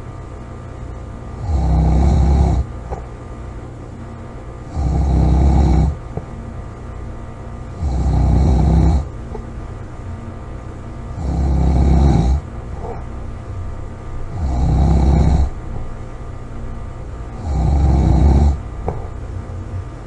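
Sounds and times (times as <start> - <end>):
woman snoring loudly: 1.4 - 2.7, 4.7 - 6.0, 7.7 - 9.1, 11.1 - 12.5, 14.3 - 15.6, 17.3 - 18.6.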